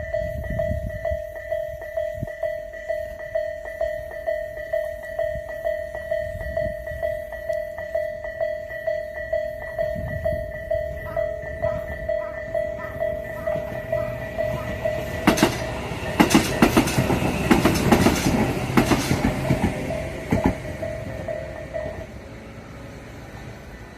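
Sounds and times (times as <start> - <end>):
level-crossing bell dinging: 0.0 - 22.2
train wheels clacking over rail joints: 10.6 - 22.1.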